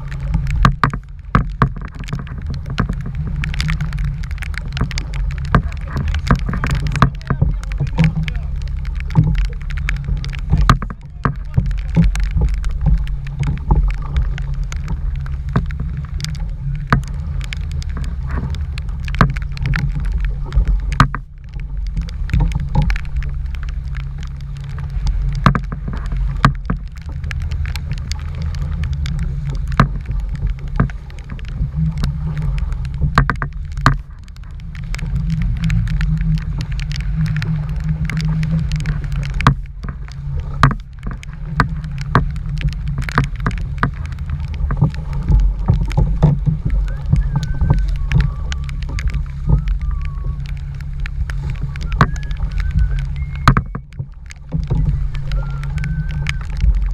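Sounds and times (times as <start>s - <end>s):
wind buffeting microphone: 0.0s - 56.9s
sharp knocks and taps: 0.5s - 14.9s, 15.5s - 24.0s, 24.6s - 29.1s, 33.1s - 34.4s, 38.1s - 48.3s, 53.5s - 54.9s.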